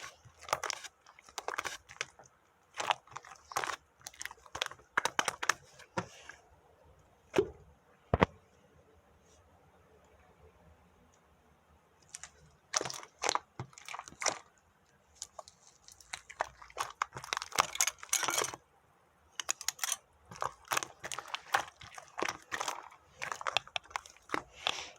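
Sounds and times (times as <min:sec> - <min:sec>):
crunchy food being chewed: 0:00.0 - 0:05.9, 0:12.0 - 0:18.6, 0:19.4 - 0:24.9.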